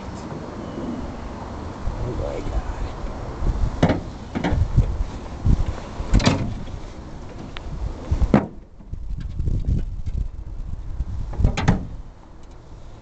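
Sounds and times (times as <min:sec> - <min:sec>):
low rumble: 0:00.0 - 0:12.2
sharp knocks and thumps: 0:03.8 - 0:04.9.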